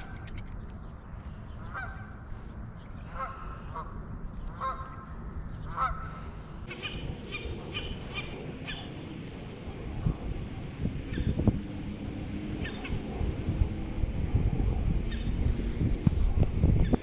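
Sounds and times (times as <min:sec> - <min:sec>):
geese honking: 0:03.0 - 0:04.0, 0:05.7 - 0:09.0.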